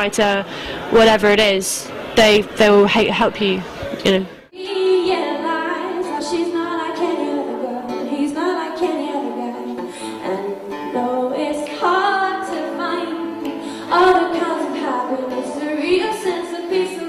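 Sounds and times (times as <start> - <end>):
woman singing pop song: 4.6 - 17.0.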